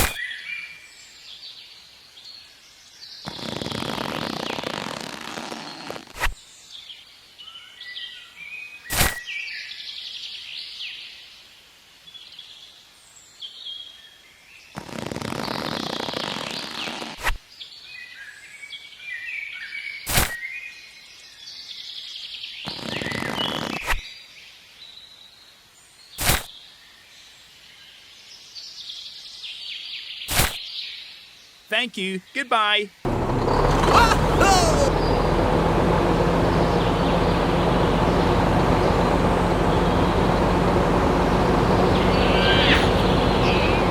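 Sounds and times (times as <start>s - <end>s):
sharp click: 20.1s - 20.4s, 30.3s - 30.6s
birds chirping: 21.5s - 24.3s, 28.6s - 43.9s.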